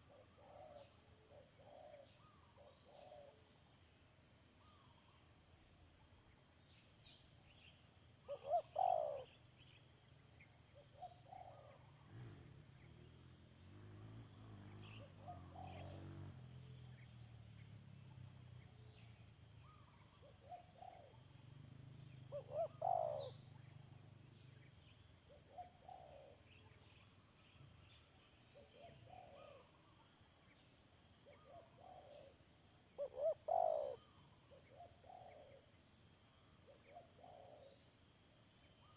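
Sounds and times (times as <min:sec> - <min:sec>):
doves cooing: 0:00.0 - 0:03.4, 0:08.3 - 0:09.4, 0:10.9 - 0:12.6, 0:14.8 - 0:16.3, 0:19.6 - 0:21.2, 0:22.3 - 0:23.4, 0:25.3 - 0:26.6, 0:33.0 - 0:35.6.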